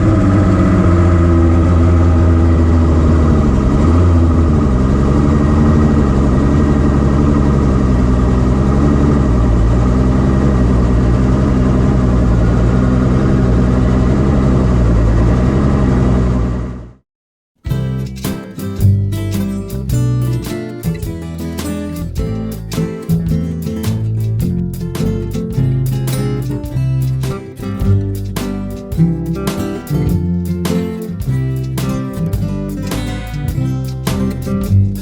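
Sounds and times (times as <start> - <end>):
outboard motor idling: 0.0 - 16.9.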